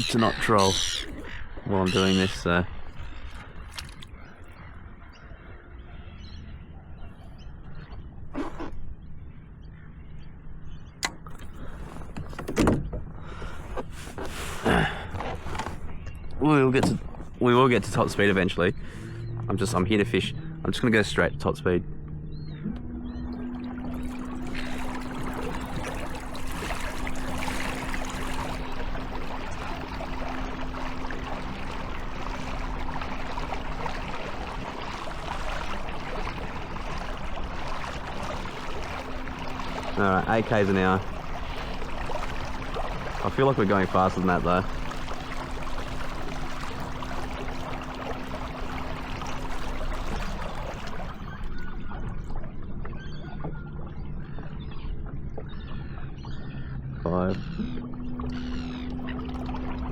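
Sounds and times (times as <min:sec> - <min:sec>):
water rushing swells: 0:23.0 - 0:52.3.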